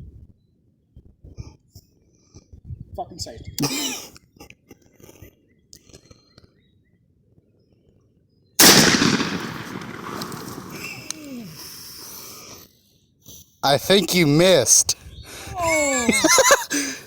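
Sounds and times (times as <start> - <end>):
shotgun blast: 8.6 - 11.3
small clicks: 9.8 - 11.3.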